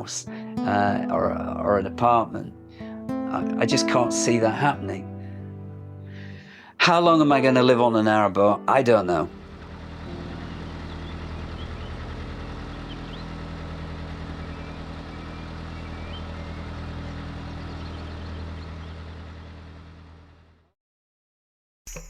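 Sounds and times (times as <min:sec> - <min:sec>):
engine idling: 0:09.0 - 0:20.7
faint bird chirps: 0:10.4 - 0:12.0, 0:12.6 - 0:13.4, 0:14.4 - 0:19.0.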